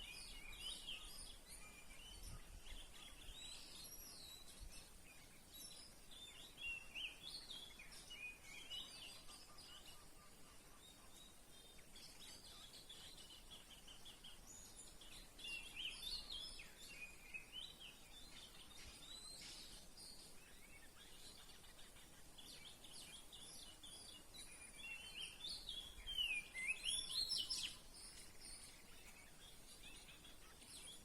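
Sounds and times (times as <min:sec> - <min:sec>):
low outdoor hiss: 0:00.0 - 0:31.0
songbirds singing: 0:00.0 - 0:31.0.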